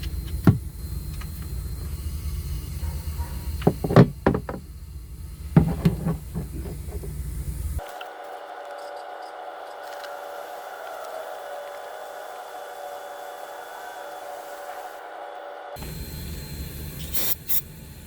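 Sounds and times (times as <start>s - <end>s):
tools clinking and knocking: 3.6s - 4.7s, 5.6s - 7.2s.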